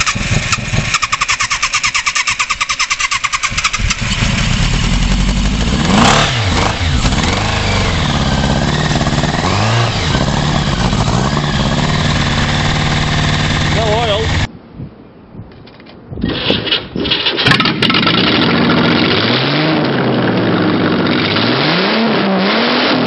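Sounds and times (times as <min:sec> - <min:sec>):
engine running and revving: 0:00.0 - 0:01.8, 0:03.4 - 0:14.5, 0:17.8 - 0:23.0
engine starter cranking: 0:00.0 - 0:04.5.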